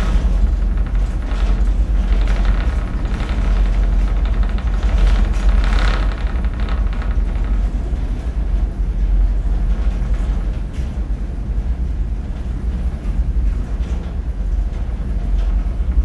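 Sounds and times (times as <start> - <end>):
loose metal rattling: 0.0 - 8.3
ferry engine rumble: 0.0 - 16.0.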